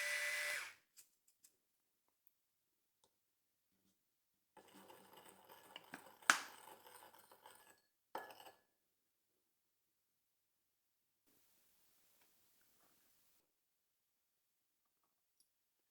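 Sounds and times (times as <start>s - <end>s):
light rattling and scraping: 4.6s - 8.6s.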